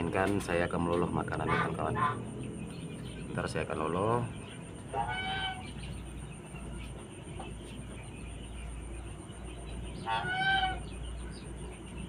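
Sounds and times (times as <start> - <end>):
chicken call: 4.9 - 5.8, 10.0 - 11.0.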